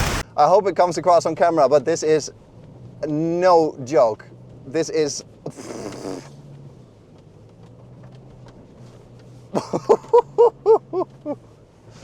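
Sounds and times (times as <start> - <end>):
car engine drone in cabin: 0.0 - 12.0
man laughing: 9.6 - 11.4.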